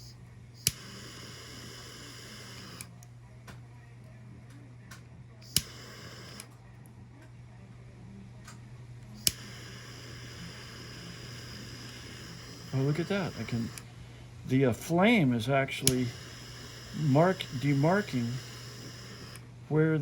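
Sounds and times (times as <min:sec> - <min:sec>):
gas torch flame hissing: 0:00.0 - 0:03.1, 0:05.4 - 0:06.6, 0:09.0 - 0:20.0
gas torch igniter clicks: 0:00.0 - 0:03.6, 0:04.9 - 0:06.6, 0:08.4 - 0:13.9, 0:15.8 - 0:19.4
steady low hum: 0:00.0 - 0:20.0.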